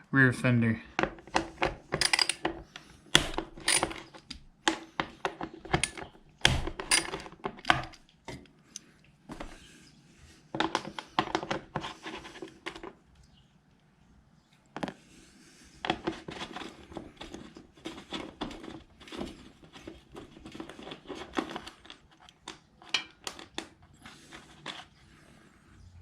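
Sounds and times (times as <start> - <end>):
hand tools clicking on metal: 1.3 - 8.0.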